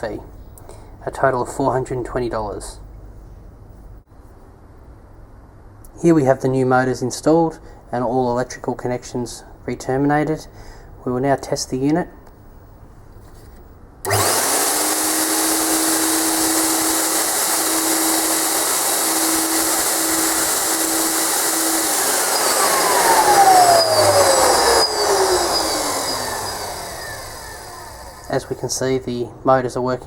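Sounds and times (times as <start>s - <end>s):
motors winding down whine: 14.1s - 28.4s
vacuum motors running: 14.1s - 28.4s.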